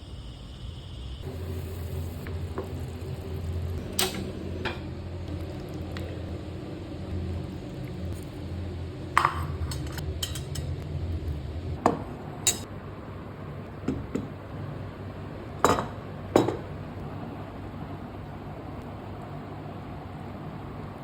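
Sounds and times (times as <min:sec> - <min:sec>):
steady low hum: 0:00.0 - 0:13.8
metal spoon clinking against pot: 0:09.2 - 0:10.8, 0:12.5 - 0:12.7.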